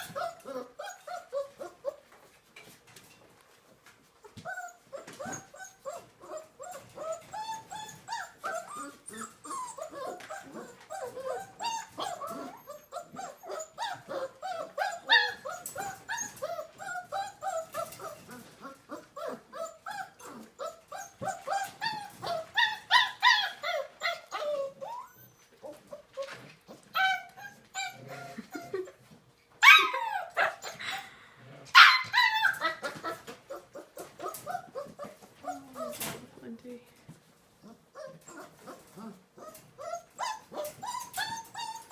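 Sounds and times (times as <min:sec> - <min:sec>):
dog whining and yipping: 0:00.0 - 0:02.0, 0:04.4 - 0:28.8, 0:29.6 - 0:31.0, 0:31.8 - 0:36.2, 0:37.6 - 0:41.9
dog yelping: 0:04.4 - 0:25.4, 0:29.6 - 0:31.0, 0:31.8 - 0:36.0.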